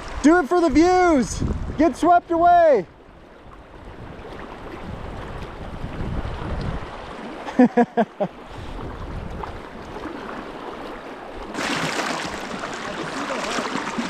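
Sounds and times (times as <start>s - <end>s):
wind buffeting microphone: 0.0s - 2.0s, 3.7s - 7.1s, 8.5s - 10.0s
person laughing: 7.5s - 8.3s
river current rushing: 10.0s - 14.0s.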